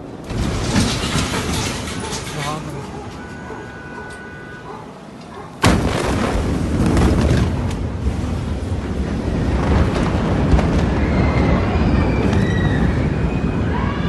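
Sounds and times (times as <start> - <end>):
explosion blast: 5.6 - 14.0
loud deep rumble: 5.6 - 14.0.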